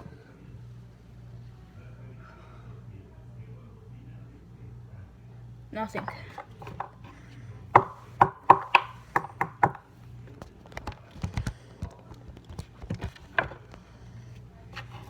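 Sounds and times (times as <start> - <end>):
knife chopping on hard surface: 6.1 - 7.2, 7.8 - 9.8.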